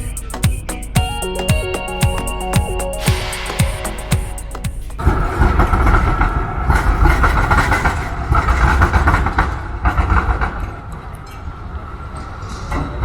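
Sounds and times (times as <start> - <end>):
music: 0.0 - 5.2
high rail noise: 0.0 - 7.0
train rumbling on rails: 4.9 - 10.9.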